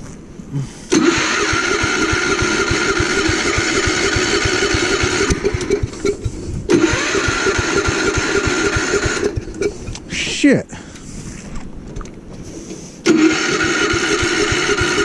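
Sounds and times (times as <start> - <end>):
snowblower engine turning over: 0.9 - 10.0, 13.0 - 15.0.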